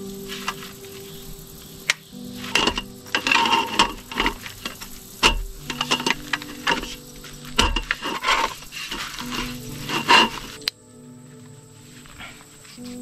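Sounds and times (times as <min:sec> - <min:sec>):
crinkly rustling: 0:00.0 - 0:13.0.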